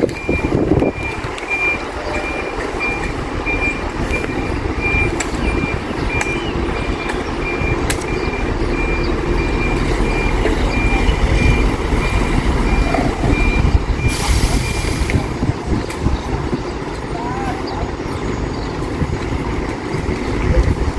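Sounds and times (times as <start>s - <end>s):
reversing alarm beeps: 0.0s - 15.0s
truck engine rumble: 0.0s - 20.9s.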